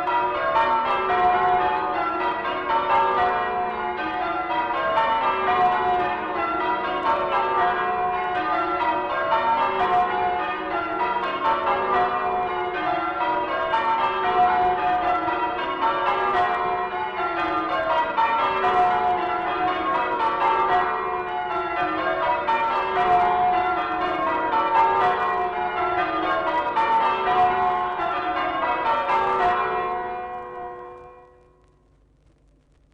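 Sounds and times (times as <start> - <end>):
church bells pealing: 0.0 - 31.6.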